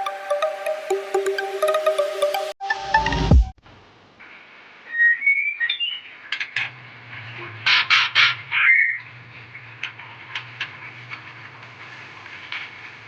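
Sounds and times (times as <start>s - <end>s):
bird chick whistling: 4.9s - 6.1s.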